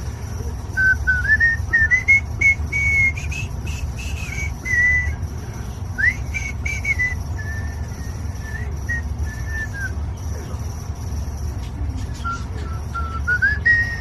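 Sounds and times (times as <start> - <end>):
low hum: 0.0 - 14.0
high whistled notes: 0.8 - 5.2, 6.0 - 10.0, 12.2 - 14.0.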